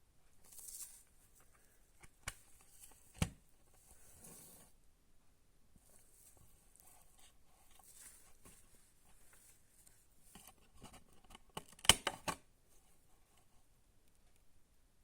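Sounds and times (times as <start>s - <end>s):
sharp plastic clicks: 11.5s - 12.4s.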